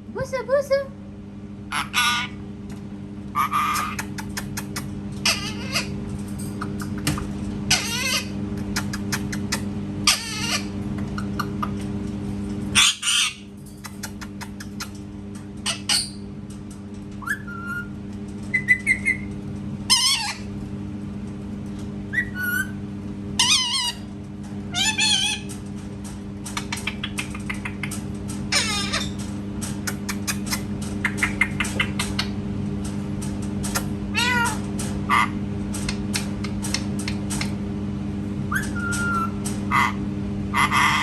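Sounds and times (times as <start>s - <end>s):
parrot squawking: 1.7s - 2.4s, 3.4s - 6.0s, 7.7s - 11.5s, 12.8s - 15.0s, 15.6s - 16.2s, 19.9s - 20.5s, 22.1s - 22.8s, 23.4s - 24.1s, 24.7s - 25.5s, 28.5s - 29.2s, 29.9s - 32.3s, 33.7s - 35.4s, 38.5s - 41.0s.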